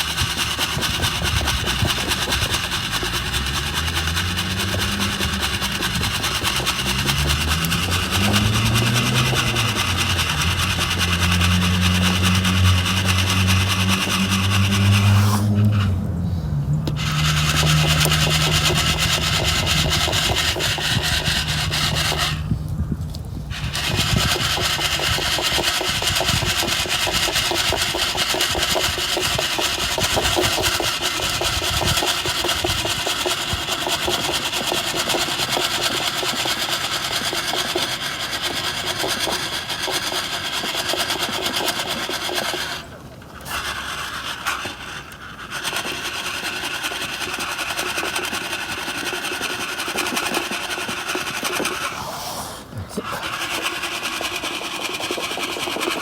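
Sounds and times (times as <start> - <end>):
coffee beans rattling in a sieve: 0.0 - 15.2, 17.1 - 22.5.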